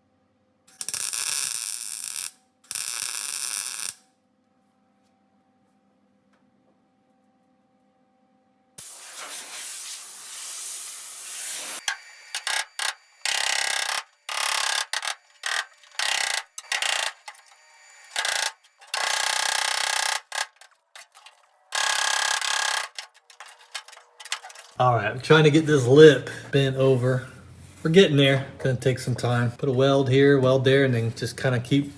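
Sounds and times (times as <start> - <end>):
short welding bursts: 0.7 - 4.0, 8.8 - 23.8
steady welding hiss: 0.7 - 4.0, 8.8 - 19.5.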